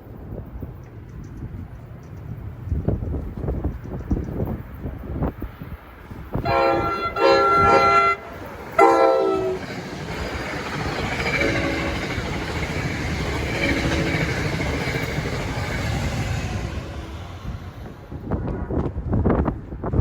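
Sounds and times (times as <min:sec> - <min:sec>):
train rumbling and clattering on rails: 0:00.0 - 0:20.0
train air horn blasts: 0:06.4 - 0:09.7, 0:11.2 - 0:12.3.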